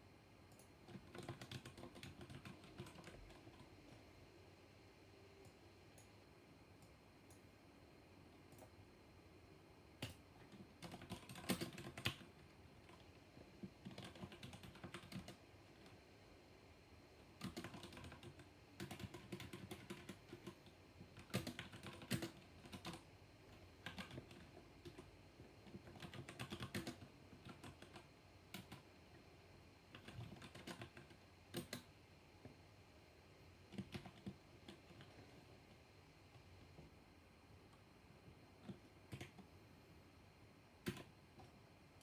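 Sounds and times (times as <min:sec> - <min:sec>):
mechanical keyboard typing: 0:00.5 - 0:03.7, 0:10.0 - 0:16.0, 0:17.2 - 0:28.9, 0:29.9 - 0:31.9, 0:33.7 - 0:35.2, 0:38.6 - 0:39.5, 0:40.8 - 0:41.6.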